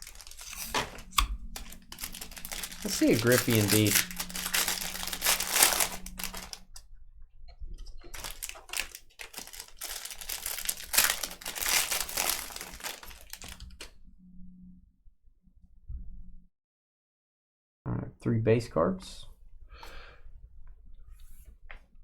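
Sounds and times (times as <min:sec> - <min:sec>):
card packaging crinkling and rustling: 0:00.0 - 0:06.8, 0:08.0 - 0:13.9.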